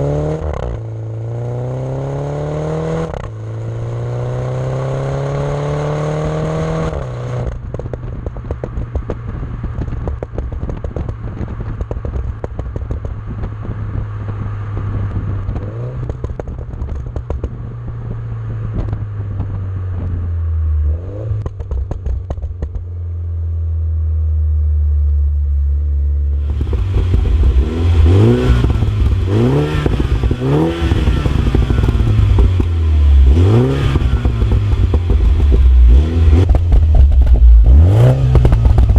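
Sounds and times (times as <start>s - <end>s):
exhaust crackling and popping: 6.7s - 23.8s, 24.9s - 38.9s
car engine revving: 26.2s - 38.9s.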